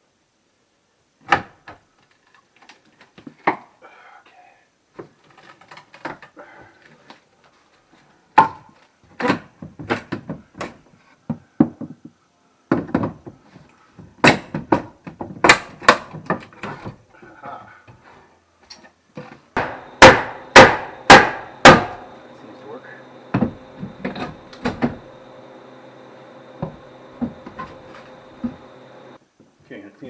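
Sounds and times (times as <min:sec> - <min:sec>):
wooden knocks and thuds: 0:09.2 - 0:12.1, 0:12.7 - 0:13.4, 0:14.0 - 0:17.0, 0:23.3 - 0:25.0, 0:26.6 - 0:28.7.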